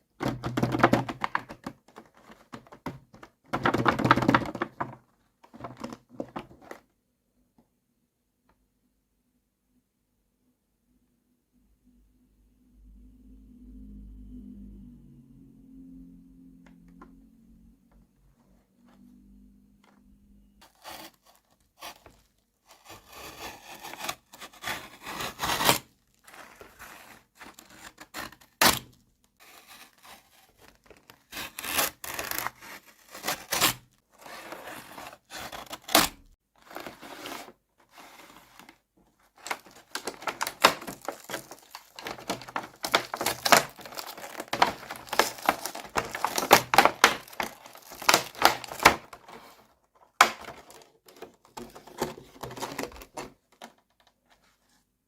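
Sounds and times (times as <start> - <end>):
plastic toy pieces rustling: 0.2 - 6.8, 36.6 - 54.0.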